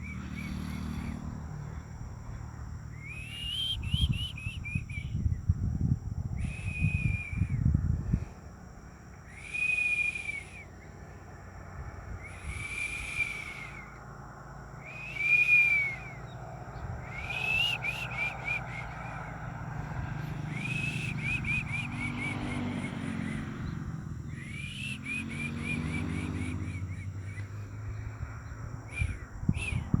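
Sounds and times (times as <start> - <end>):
animal whistling calls: 3.0 - 5.2, 6.4 - 7.6, 9.3 - 10.8, 12.2 - 14.0, 14.8 - 19.6, 20.5 - 23.5, 24.3 - 27.6, 28.9 - 30.0.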